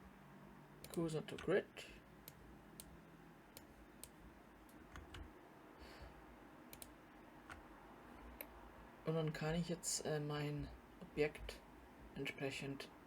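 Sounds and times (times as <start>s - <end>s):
computer mouse clicks: 0.8s - 1.5s, 2.2s - 5.3s, 6.7s - 7.6s.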